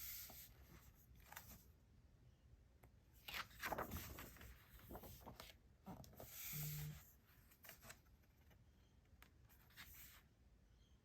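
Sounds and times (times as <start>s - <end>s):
paper pages rustling: 3.2s - 6.8s.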